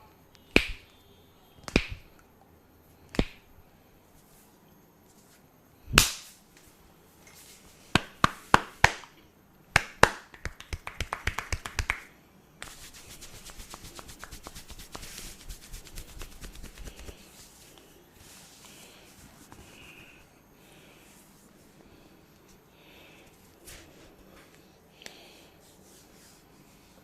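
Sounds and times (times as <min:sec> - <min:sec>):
hands slapping head in massage: 0:00.6 - 0:00.8, 0:01.6 - 0:02.1, 0:03.1 - 0:03.4, 0:05.9 - 0:06.4, 0:07.9 - 0:09.1, 0:09.7 - 0:17.2.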